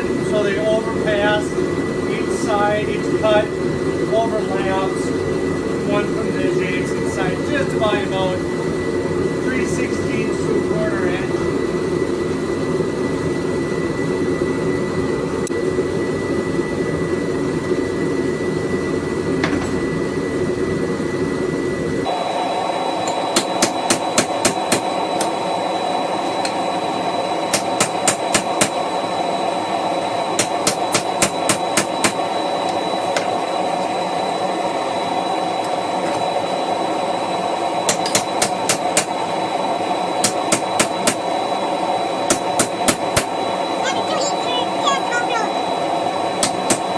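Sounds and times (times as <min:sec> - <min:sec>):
hammer striking metal chisel: 0:27.5 - 0:28.7, 0:30.4 - 0:32.2, 0:37.9 - 0:39.1, 0:40.2 - 0:41.2.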